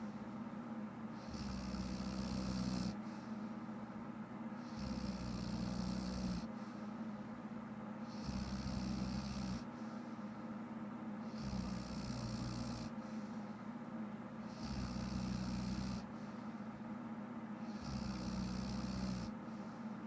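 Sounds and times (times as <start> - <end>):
woman snoring: 1.2 - 3.0, 4.6 - 6.5, 8.1 - 9.7, 11.2 - 13.0, 14.5 - 16.1, 17.7 - 19.3.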